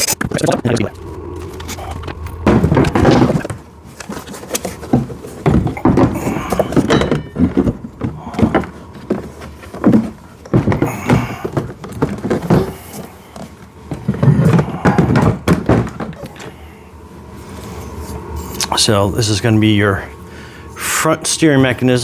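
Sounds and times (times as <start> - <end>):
plastic parts knocking and rattling: 2.5 - 16.5.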